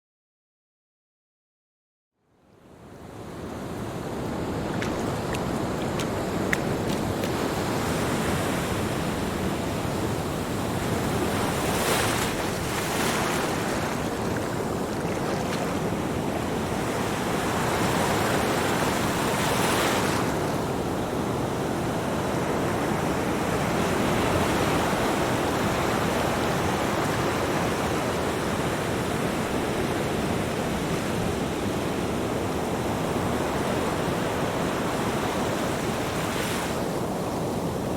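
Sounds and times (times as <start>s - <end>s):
ocean waves breaking: 3.4s - 21.8s.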